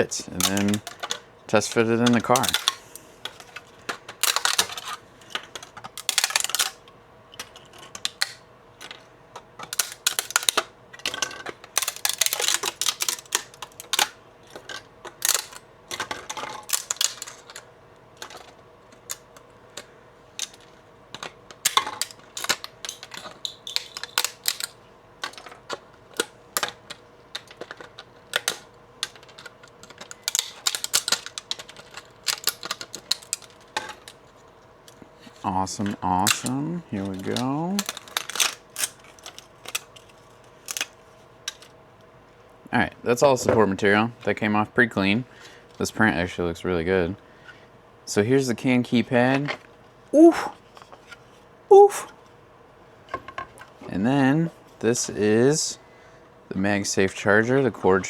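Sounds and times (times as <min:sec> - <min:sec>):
plastic snapping and peeling: 0:00.0 - 0:41.8.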